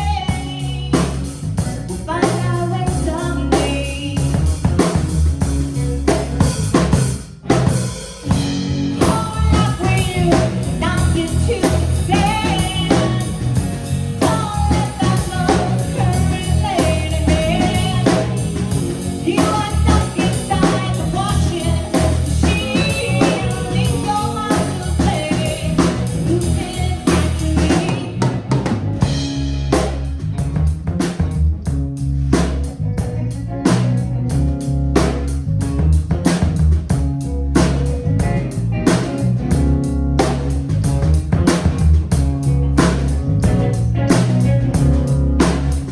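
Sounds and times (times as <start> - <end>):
band music: 0.0 - 45.9
bending lead melody: 0.0 - 45.9.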